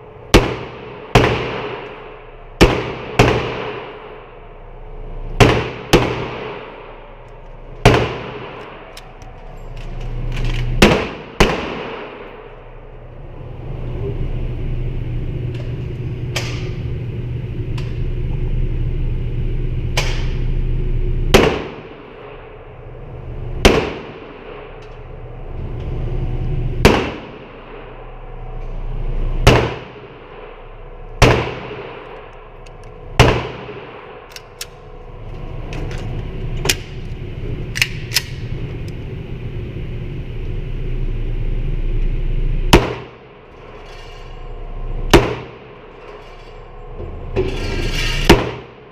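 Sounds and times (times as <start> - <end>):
steady low hum: 0.0 - 48.9
gunshots with echo: 0.3 - 4.2, 5.4 - 7.0, 10.8 - 12.4, 21.3 - 22.5, 23.6 - 24.8, 26.8 - 27.9, 45.1 - 45.7.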